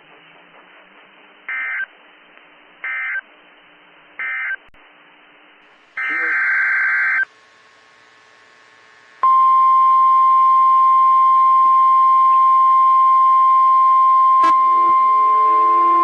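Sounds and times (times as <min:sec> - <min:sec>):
steady alarm beep: 0:09.2 - 0:16.0.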